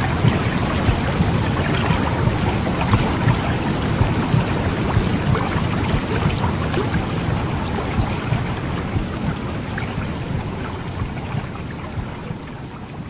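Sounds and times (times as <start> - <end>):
steady whooshing womb rumble: 0.0 - 13.0.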